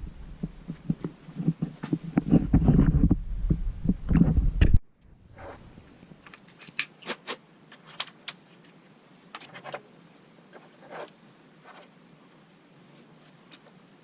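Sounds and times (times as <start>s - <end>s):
small metal parts clinking: 7.7s - 8.4s.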